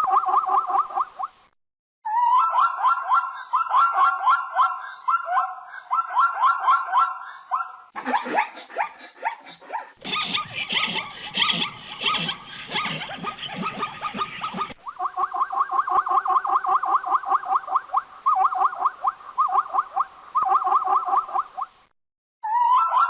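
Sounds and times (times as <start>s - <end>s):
zebras barking: 8.0s - 14.8s.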